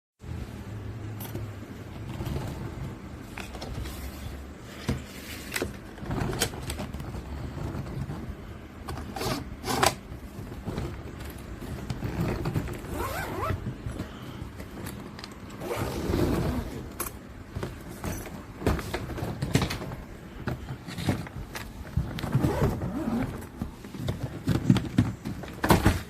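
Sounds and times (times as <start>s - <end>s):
suitcase clicks and knocks: 16.9s - 26.0s.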